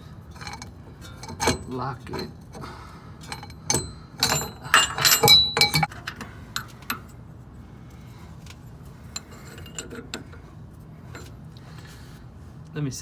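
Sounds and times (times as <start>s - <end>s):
metal tool parts clinking: 0.3s - 2.6s, 3.2s - 7.1s, 9.1s - 10.4s.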